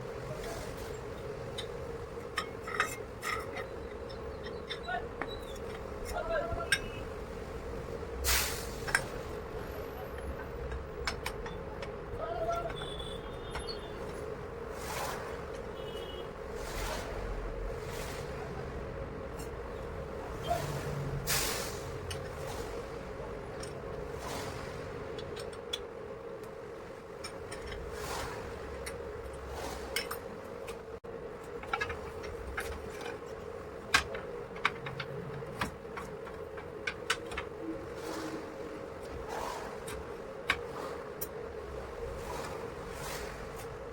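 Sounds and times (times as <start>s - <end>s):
metallic clicks and knocks: 1.5s - 7.0s, 10.2s - 14.2s, 28.7s - 37.9s.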